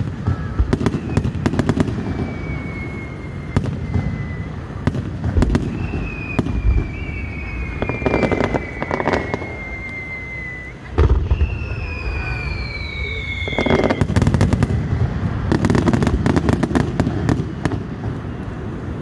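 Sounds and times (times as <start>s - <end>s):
low rumbling booms: 0.0s - 18.2s
fireworks bangs and crackling: 0.0s - 19.0s
firework whistle falling in pitch: 0.2s - 15.1s.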